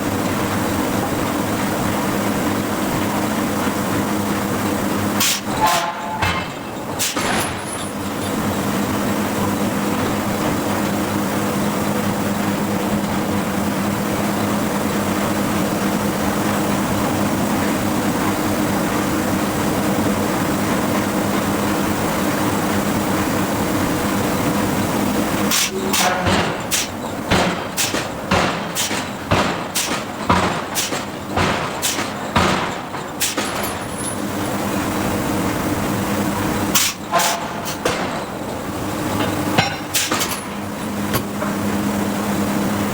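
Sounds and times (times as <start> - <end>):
hydraulic hammer machinery hum: 0.0 - 42.9
hammer blows on steel: 25.5 - 32.2.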